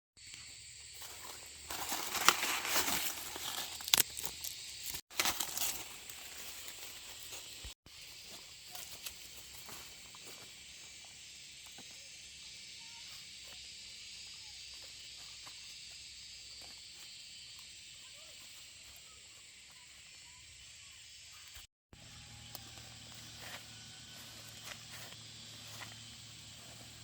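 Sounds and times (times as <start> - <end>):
high-pitched insect drone: 5.6 - 27.0.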